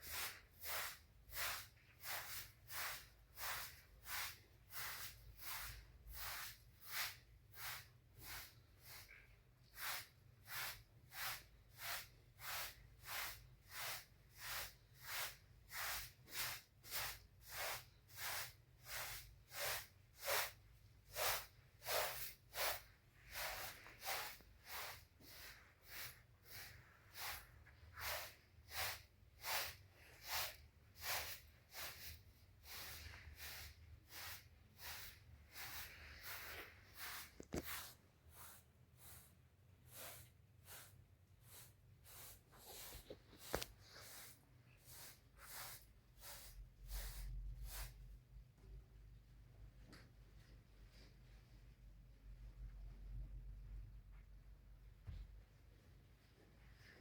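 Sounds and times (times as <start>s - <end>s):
regular swishing strokes: 0.0s - 48.2s.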